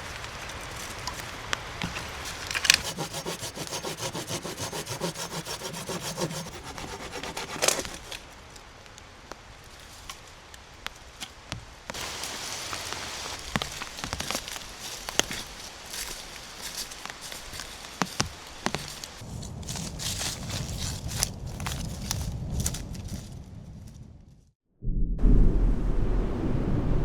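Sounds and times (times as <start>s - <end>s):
hand saw cutting wood: 1.8s - 8.3s, 17.5s - 19.2s
steady hiss: 11.9s - 19.2s.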